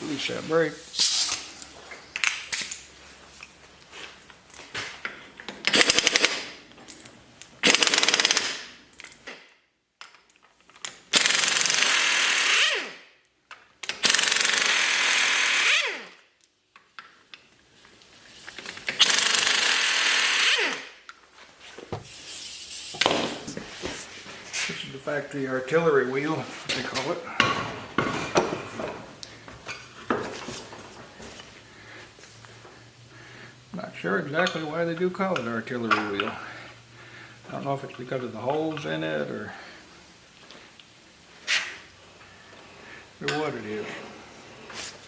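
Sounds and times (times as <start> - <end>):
impact wrench hammering: 27.3 - 29.2.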